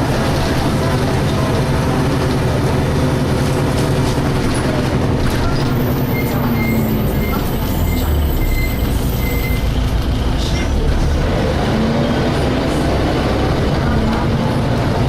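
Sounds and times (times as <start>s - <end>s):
bus diesel engine running: 0.0s - 15.0s
faint high beep: 6.0s - 9.7s.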